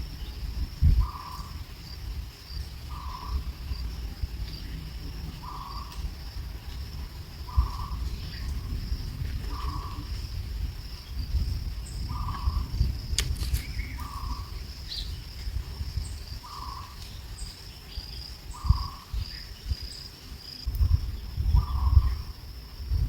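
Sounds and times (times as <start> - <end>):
low rumble: 0.0 - 17.4
insect high-pitched trill: 0.0 - 23.0
sharp clicks: 13.1 - 14.1.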